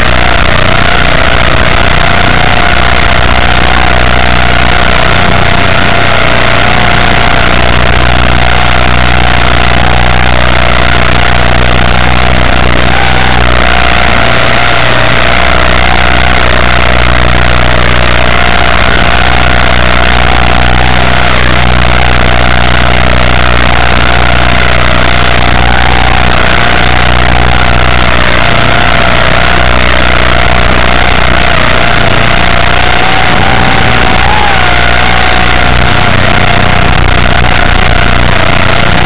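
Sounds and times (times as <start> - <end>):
electric motor whining: 0.0 - 39.0.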